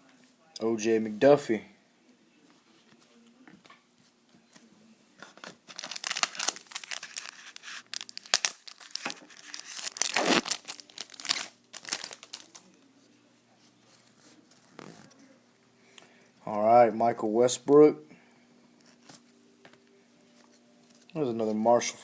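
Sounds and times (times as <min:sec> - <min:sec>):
wrapper tearing and crinkling: 0:05.2 - 0:12.7.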